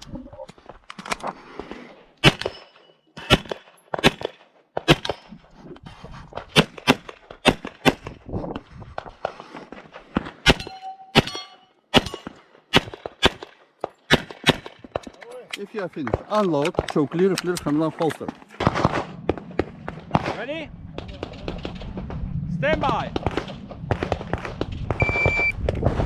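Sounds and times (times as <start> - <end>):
steel targets clanging: 10.6 - 12.4.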